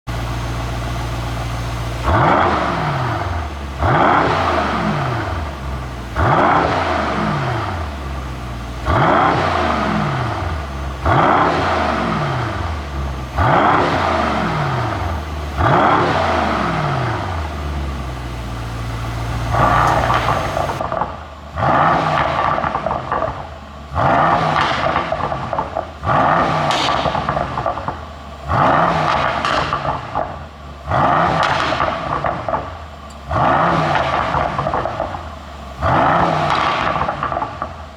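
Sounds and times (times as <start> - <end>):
car engine revving: 0.1 - 37.9
exhaust pops and crackles: 0.1 - 37.9.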